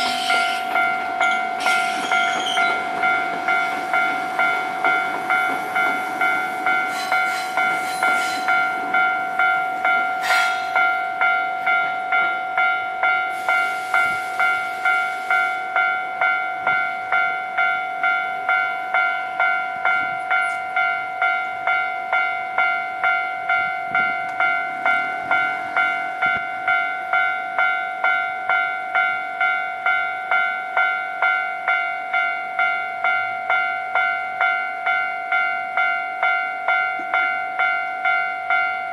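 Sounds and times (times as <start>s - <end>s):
train hiss: 0.0s - 0.7s, 6.9s - 8.6s, 10.2s - 10.9s, 13.3s - 15.7s
level-crossing warning bell: 0.0s - 38.9s
train running noise: 0.0s - 38.9s.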